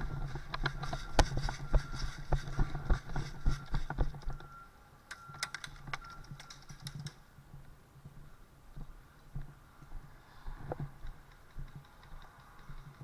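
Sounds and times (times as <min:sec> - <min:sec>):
sharp clicks: 0:11.1 - 0:13.0.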